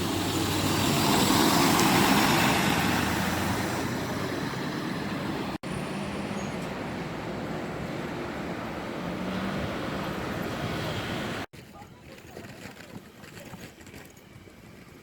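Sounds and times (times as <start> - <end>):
vehicle passing close: 0.0 - 11.5
steady traffic rumble: 0.0 - 15.0.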